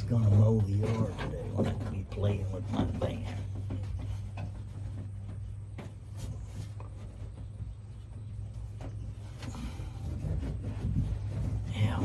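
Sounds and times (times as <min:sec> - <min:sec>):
panel rubbing: 0:00.0 - 0:12.0.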